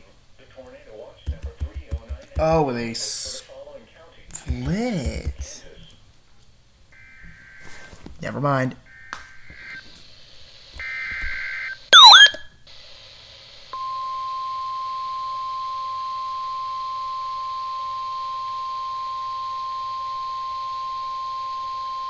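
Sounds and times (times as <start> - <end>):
steady warning alarm tone: 10.8 - 12.4
screechy data burst: 10.9 - 12.4
swooping electronic chirp: 12.0 - 12.4.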